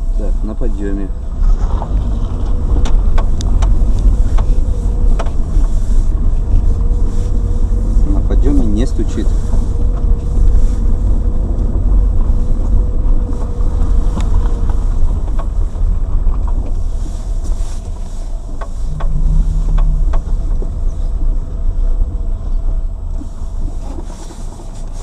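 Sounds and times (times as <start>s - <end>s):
road and engine rumble: 0.0s - 25.0s
suspension knocks: 18.4s - 23.2s.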